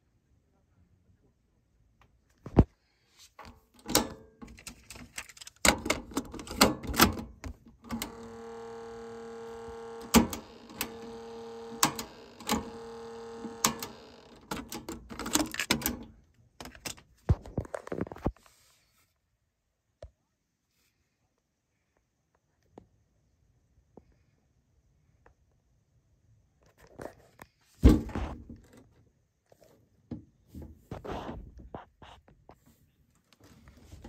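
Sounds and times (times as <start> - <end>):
cassette deck keys clunking: 3.8 - 4.9, 9.7 - 17.0
steady low hum: 7.8 - 14.7.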